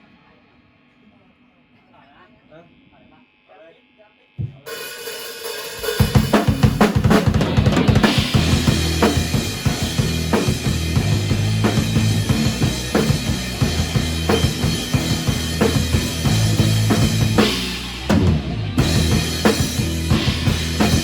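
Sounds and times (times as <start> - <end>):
instrumental band music: 4.4 - 21.0.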